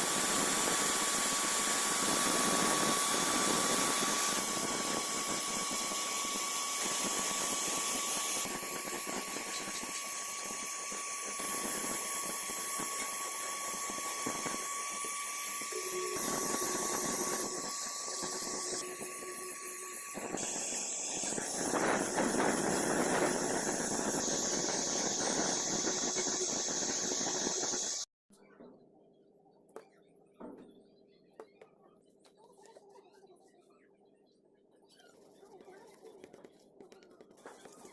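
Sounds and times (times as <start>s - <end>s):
power tool whining on metal: 0.0s - 28.1s.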